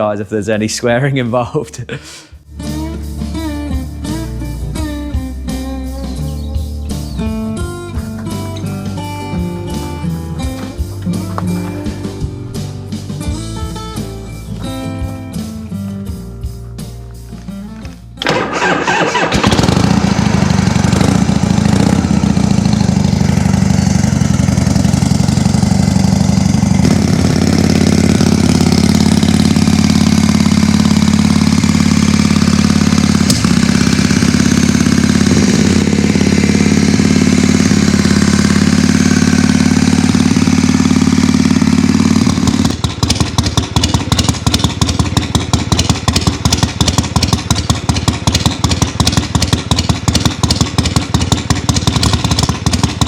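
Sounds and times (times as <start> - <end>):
motorcycle engine idling: 18.2 - 53.0.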